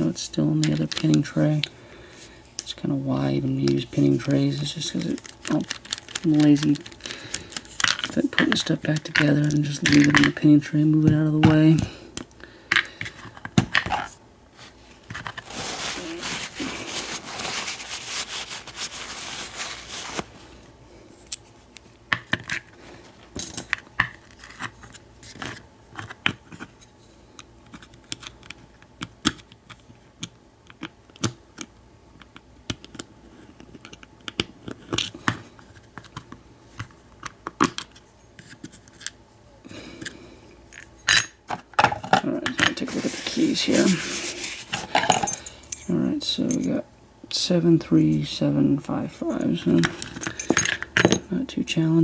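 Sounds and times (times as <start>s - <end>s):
steady scraping: 14.6s - 20.7s.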